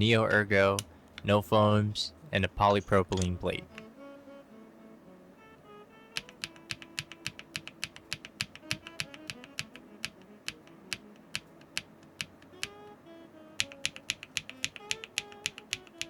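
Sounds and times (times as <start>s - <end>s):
background music: 0.0s - 16.0s
mechanical keyboard typing: 6.2s - 12.8s, 13.6s - 16.0s.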